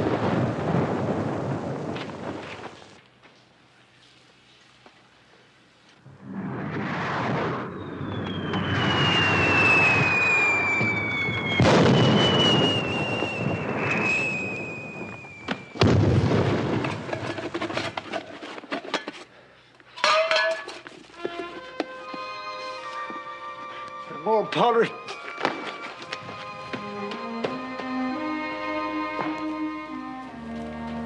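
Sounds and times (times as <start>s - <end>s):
crackling pops: 1.8s - 4.1s, 5.9s - 18.6s
firework bang: 6.1s - 18.0s
rockets whistling: 6.4s - 17.4s.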